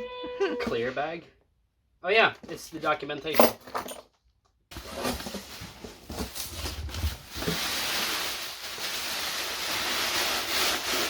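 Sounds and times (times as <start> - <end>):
plastic packaging crinkling: 4.7 - 11.0.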